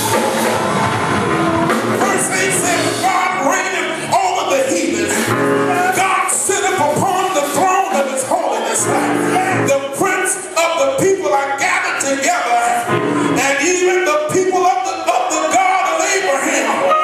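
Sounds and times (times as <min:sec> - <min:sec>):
gospel singing with instruments: 0:00.0 - 0:17.0.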